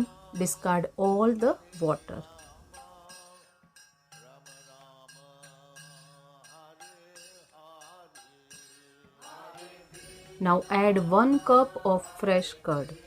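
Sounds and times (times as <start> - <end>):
person singing: 0.0 - 3.4, 9.3 - 13.0.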